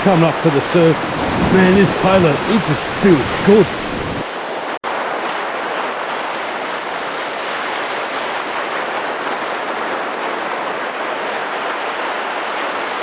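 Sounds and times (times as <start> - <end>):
surf washing onto beach: 0.0 - 13.0.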